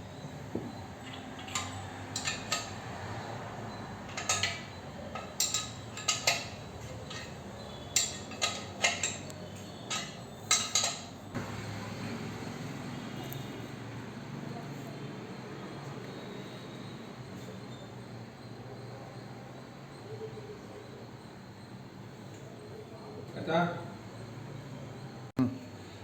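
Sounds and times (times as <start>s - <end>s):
metal parts clinking: 4.1s - 11.2s.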